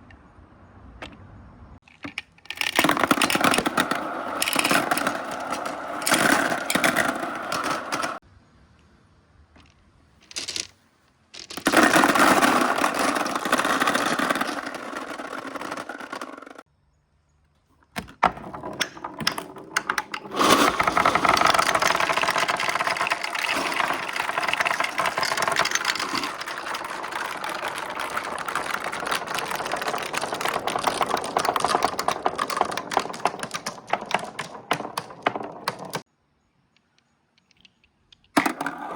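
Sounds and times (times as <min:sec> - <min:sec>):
glass marbles rattling down plastic track: 0:02.4 - 0:08.2, 0:10.2 - 0:10.7, 0:11.4 - 0:16.6, 0:18.4 - 0:36.0.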